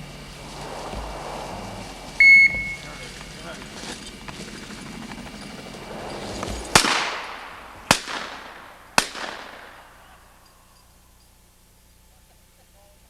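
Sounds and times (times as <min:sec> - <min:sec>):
shotgun shots with echo: 0:06.6 - 0:10.4.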